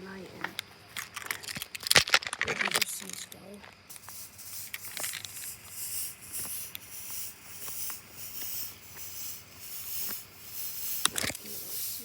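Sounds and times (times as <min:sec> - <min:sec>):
fog machine pulsing hiss: 0:03.9 - 0:12.0.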